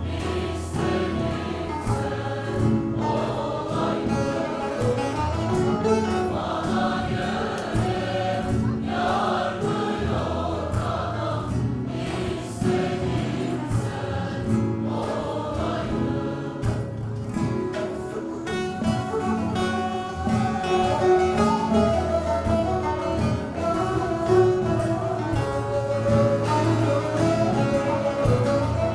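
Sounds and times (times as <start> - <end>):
choir singing: 0.0 - 28.9
instrumental accompaniment: 0.0 - 28.9.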